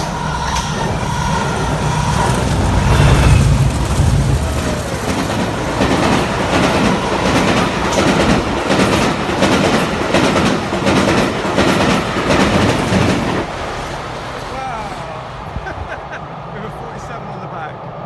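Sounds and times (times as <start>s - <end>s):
train wheels clacking over rail joints: 0.0s - 14.2s
locomotive engine drone: 0.0s - 18.0s
train rumbling roar: 0.0s - 18.0s.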